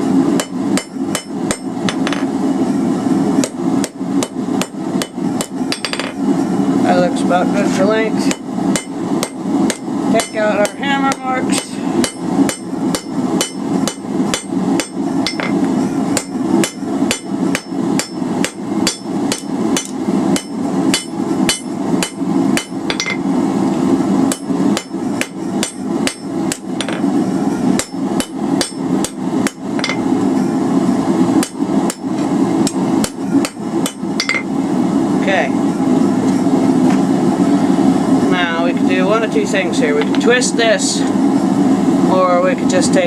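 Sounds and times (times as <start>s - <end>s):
steady low hum: 0.0s - 43.0s
hammer striking steel on anvil: 0.4s - 2.3s, 3.4s - 6.2s, 8.3s - 15.6s, 16.2s - 23.3s, 24.3s - 27.1s, 27.8s - 30.1s, 31.4s - 34.5s.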